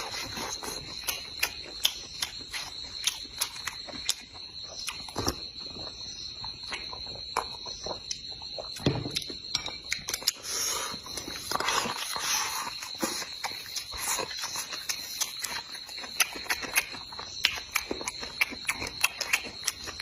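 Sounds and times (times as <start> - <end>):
chewing and mouth noises: 0.0 - 20.0.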